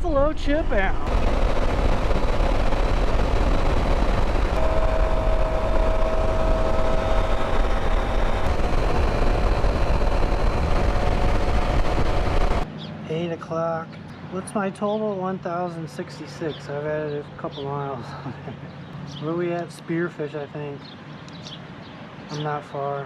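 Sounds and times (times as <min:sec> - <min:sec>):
faint steady whine: 0:00.0 - 0:12.7
motorcycle engine drone: 0:00.0 - 0:12.7
wind rush and road noise: 0:00.0 - 0:12.7.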